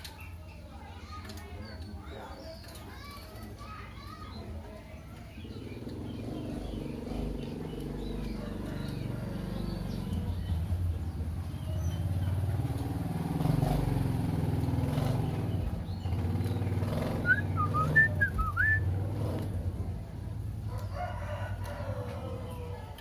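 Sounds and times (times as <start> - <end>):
motor engine running: 5.2 - 20.9
bird whistling notes: 17.1 - 19.0.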